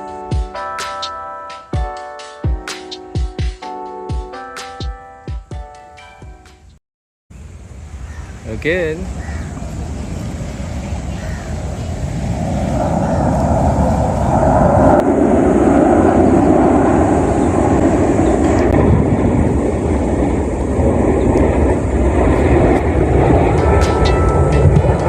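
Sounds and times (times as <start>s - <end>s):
jet roar: 7.4s - 25.0s.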